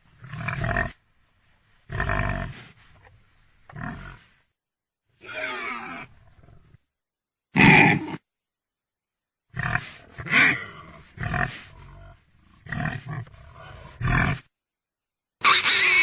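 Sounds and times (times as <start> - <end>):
pig grunting: 7.6 - 8.2, 9.6 - 14.5.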